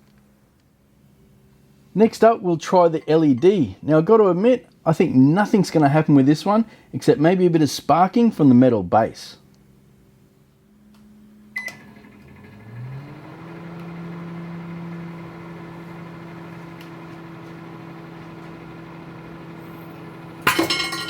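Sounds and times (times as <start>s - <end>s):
microwave oven humming: 9.5s - 21.0s.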